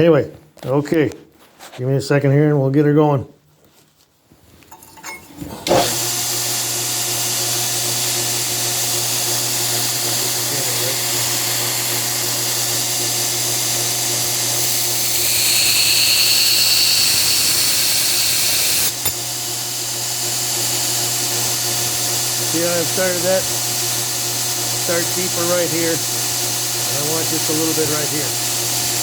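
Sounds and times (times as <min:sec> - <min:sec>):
belt grinder running: 0:05.6 - 0:29.0
knife blade grinding on belt: 0:14.4 - 0:19.3.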